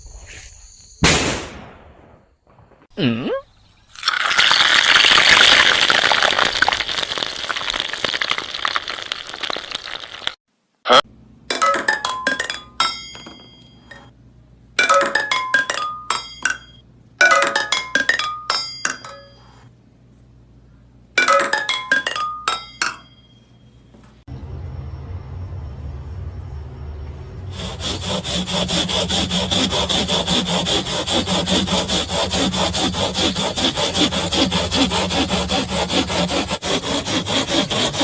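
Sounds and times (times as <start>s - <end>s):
dense crackling noise: 5.7s - 10.4s
glass objects clinking: 11.5s - 14.1s, 14.8s - 19.5s, 21.2s - 23.5s.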